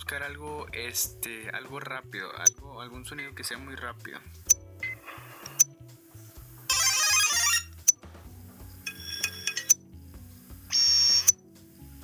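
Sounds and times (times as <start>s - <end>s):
background music: 0.0s - 12.0s
chiming phone tones: 6.7s - 7.7s, 8.9s - 9.8s
loud electronic beep: 6.7s - 7.7s, 8.9s - 9.8s, 10.7s - 11.4s.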